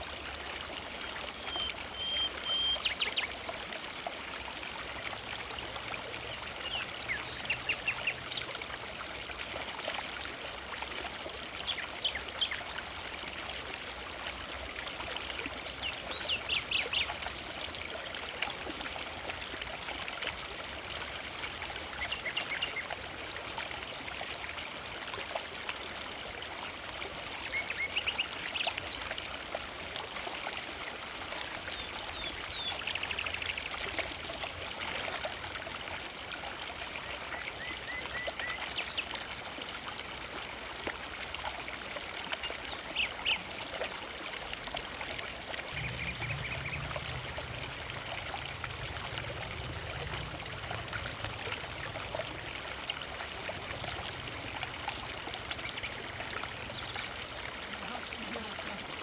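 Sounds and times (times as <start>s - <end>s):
river flowing: 0.0s - 59.0s
birds chirping: 42.9s - 52.6s.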